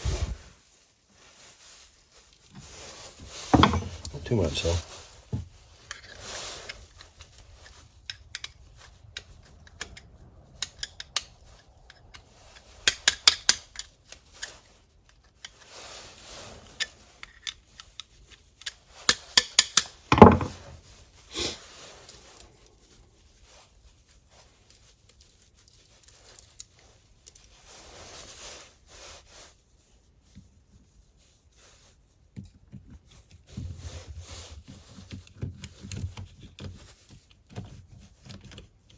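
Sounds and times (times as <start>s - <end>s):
small metal clicks and rattles: 5.8s - 15.8s, 16.8s - 20.4s
loud knock: 20.1s - 20.6s.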